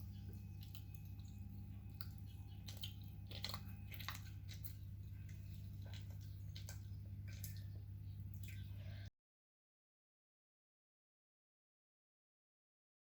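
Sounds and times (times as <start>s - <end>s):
person chewing food: 0.0s - 9.1s
steady low hum: 0.0s - 9.1s.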